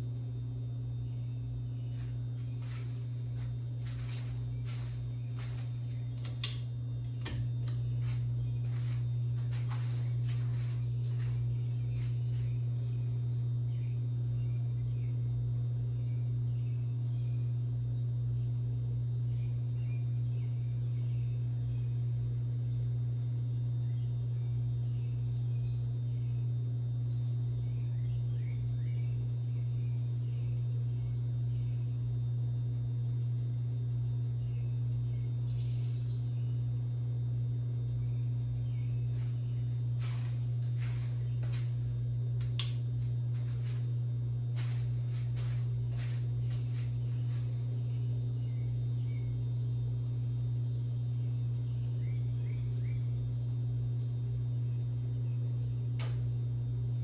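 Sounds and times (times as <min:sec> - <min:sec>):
ceiling fan motor humming: 0:00.0 - 0:57.0.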